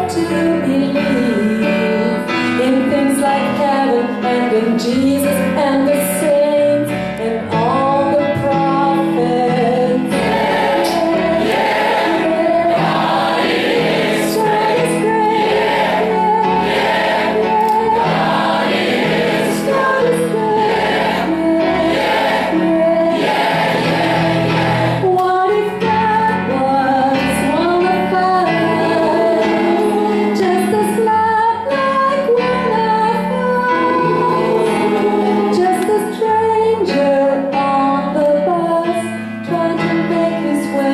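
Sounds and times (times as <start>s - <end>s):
instrumental accompaniment: 0.0s - 40.9s
choir singing: 9.5s - 25.1s, 28.4s - 31.0s, 33.5s - 36.1s.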